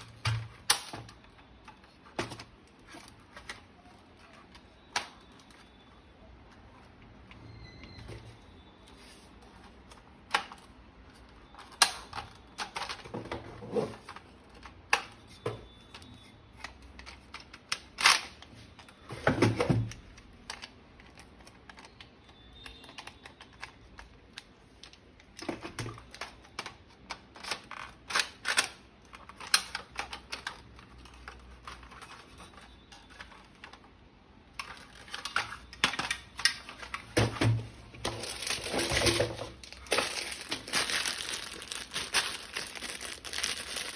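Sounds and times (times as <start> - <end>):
plastic toy parts clicking: 20.2 - 32.2.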